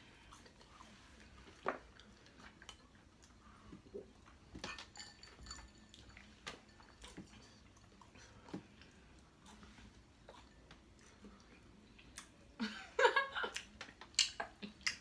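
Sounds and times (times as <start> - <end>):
chewing and crunching: 0.0 - 12.6
mouth clicks: 14.1 - 15.0.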